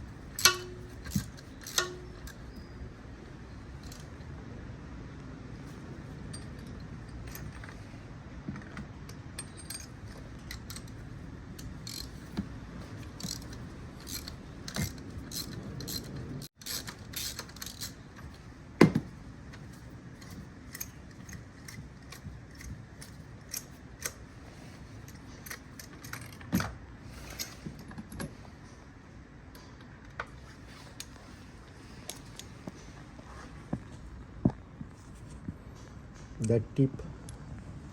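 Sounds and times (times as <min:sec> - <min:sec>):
metal tools clinking: 0:00.2 - 0:02.8, 0:06.0 - 0:08.0, 0:08.6 - 0:18.4.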